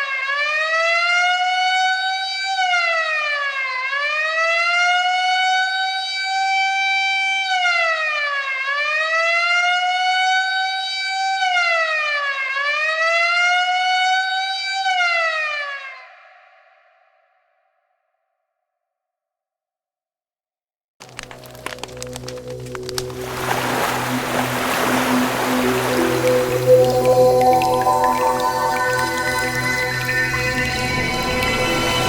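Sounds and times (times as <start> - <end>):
alarm siren wailing: 0.0 - 17.0, 23.6 - 32.0.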